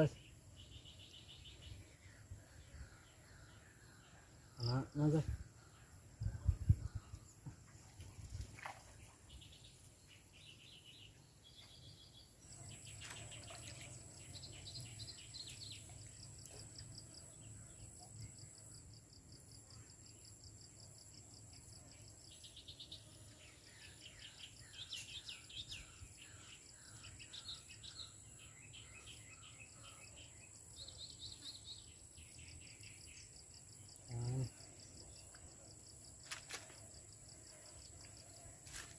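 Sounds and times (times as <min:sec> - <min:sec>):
birds chirping in trills: 0:00.0 - 0:07.4, 0:08.8 - 0:18.7, 0:22.0 - 0:35.4.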